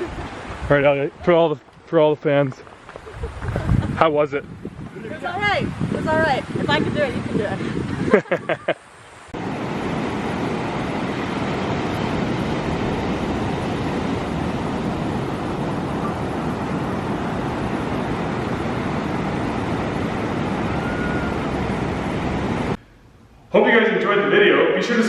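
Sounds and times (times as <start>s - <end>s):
steady rushing noise: 0.0s - 25.0s.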